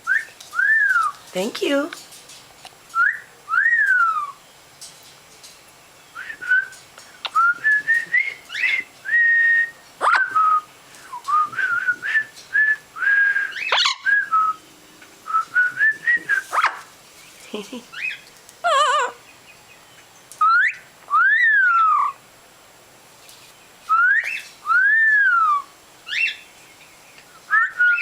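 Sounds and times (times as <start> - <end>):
parrot whistling: 7.3 - 10.6, 12.6 - 14.6, 20.4 - 22.2
parrot squawks: 13.6 - 14.1, 16.5 - 16.8, 18.6 - 19.2.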